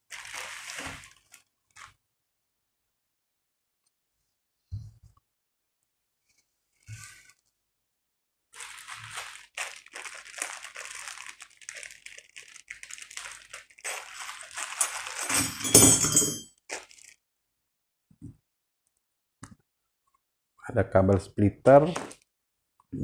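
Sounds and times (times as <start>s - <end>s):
packaging crinkling and rustling: 0.0s - 2.0s, 8.6s - 17.2s
packaging crunch: 0.1s - 1.9s, 8.6s - 15.7s, 16.7s - 17.2s.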